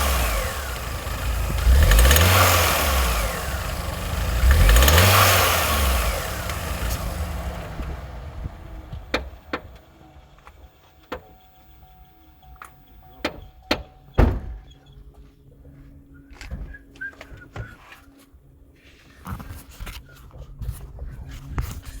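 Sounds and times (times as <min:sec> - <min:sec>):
car engine revving down: 0:00.0 - 0:11.2
knocks and clunks: 0:00.0 - 0:14.8.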